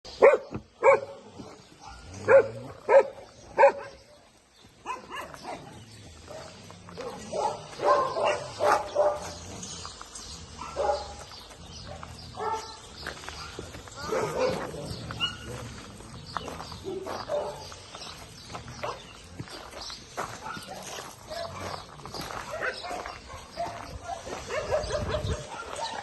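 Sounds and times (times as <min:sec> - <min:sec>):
dogs barking: 0:00.1 - 0:26.0
dogs yelping: 0:10.5 - 0:11.2.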